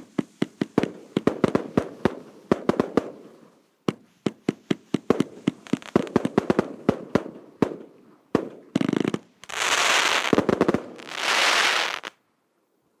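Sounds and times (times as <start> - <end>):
crackling firework hiss: 0.0 - 7.8, 8.4 - 12.2
firework shots: 3.9 - 12.1.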